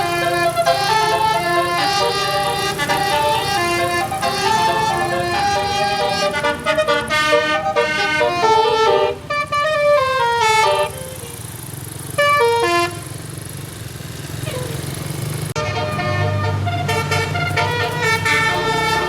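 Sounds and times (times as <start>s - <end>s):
musical air horn tune: 0.0s - 11.5s, 12.2s - 13.3s, 15.6s - 19.0s
bus engine hum: 0.0s - 19.0s.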